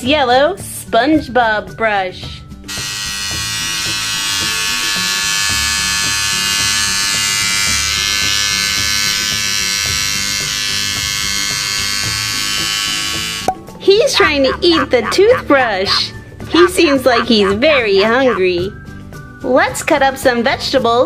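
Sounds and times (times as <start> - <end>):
background music: 0.0 - 21.0
electric toothbrush buzzing: 2.6 - 13.5, 14.2 - 18.4.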